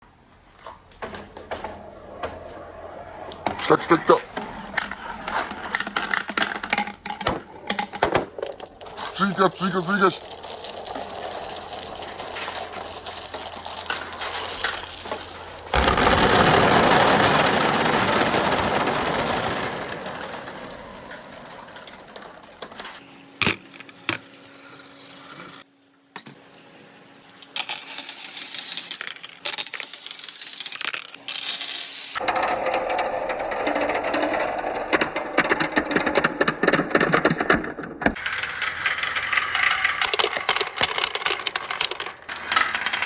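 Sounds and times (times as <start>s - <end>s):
marbles rolling and clattering: 3.3s - 43.0s
marble clicks: 23.0s - 32.2s.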